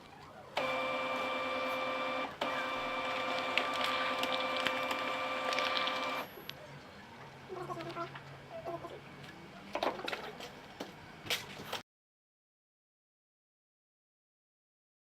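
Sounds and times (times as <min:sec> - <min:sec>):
printer whirring: 0:00.5 - 0:06.5
printer fine ticking: 0:00.6 - 0:06.2.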